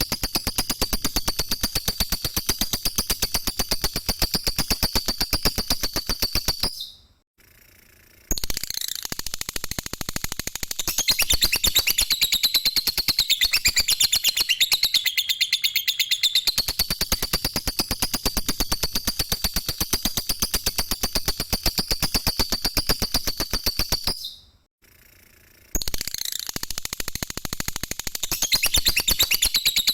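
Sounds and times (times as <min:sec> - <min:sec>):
lovebird chattering trill: 0:10.9 - 0:17.9, 0:28.3 - 0:29.9.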